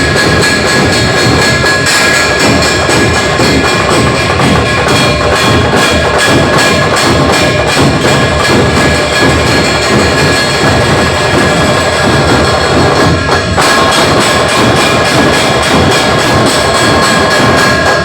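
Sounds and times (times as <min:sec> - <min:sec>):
fast loud drumming: 0:00.0 - 0:18.0
steady ringing tone: 0:00.0 - 0:18.0.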